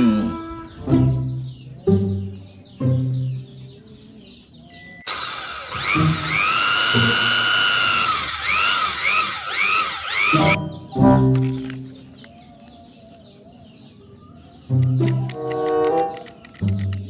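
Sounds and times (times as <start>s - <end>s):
toy power tool electronic whirring: 5.1s - 10.6s.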